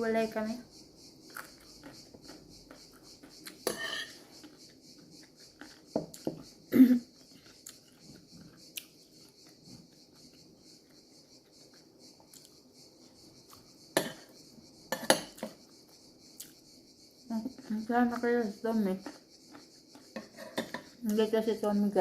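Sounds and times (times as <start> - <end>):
cutlery clinking on a plate: 3.6 - 4.2, 14.9 - 15.6, 20.2 - 20.9
cutlery clunk: 3.7 - 4.2, 14.0 - 14.2, 14.9 - 15.6, 20.2 - 20.9.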